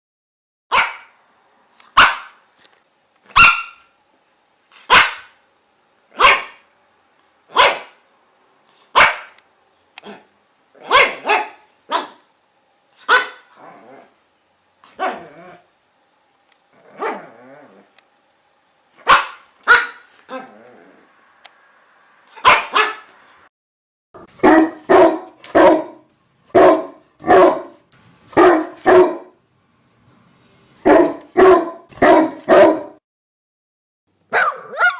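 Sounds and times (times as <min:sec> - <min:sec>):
dog barking: 0:00.7 - 0:01.2, 0:01.9 - 0:02.4, 0:03.3 - 0:03.9, 0:04.8 - 0:05.4, 0:06.1 - 0:06.7, 0:07.5 - 0:08.0, 0:08.9 - 0:09.4, 0:10.0 - 0:12.3, 0:13.0 - 0:13.6, 0:14.9 - 0:15.3, 0:17.0 - 0:17.3, 0:19.0 - 0:20.5, 0:22.3 - 0:23.1, 0:24.2 - 0:29.4, 0:30.8 - 0:33.0, 0:34.3 - 0:34.9.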